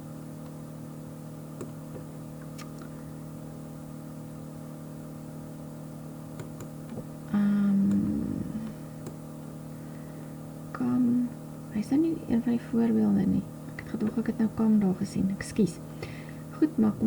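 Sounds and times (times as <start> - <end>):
low electrical hum: 0.0 - 17.0
person humming a wavering tone: 7.4 - 8.7.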